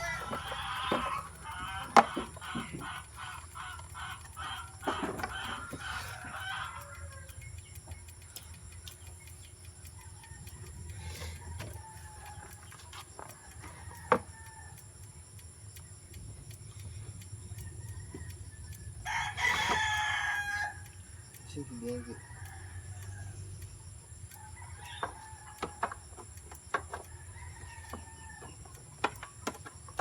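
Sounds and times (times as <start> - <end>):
chickens clucking: 0.0 - 14.6.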